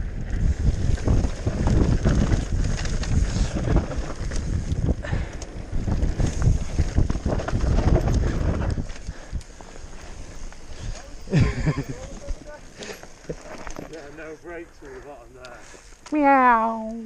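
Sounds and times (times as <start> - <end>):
wind rushing over microphone: 0.0 - 12.8
bike rattling and knocking: 0.1 - 14.4
tyre rumble: 0.2 - 14.2.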